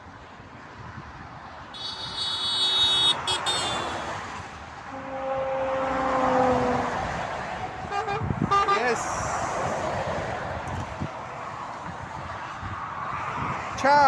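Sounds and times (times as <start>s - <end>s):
highway traffic passing: 0.0s - 14.0s
passing vehicle horn blowing: 1.7s - 9.0s.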